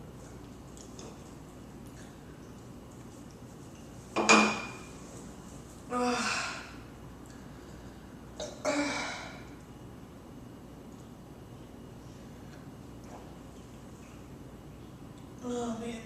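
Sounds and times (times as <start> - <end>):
woman burping: 8.4 - 9.4.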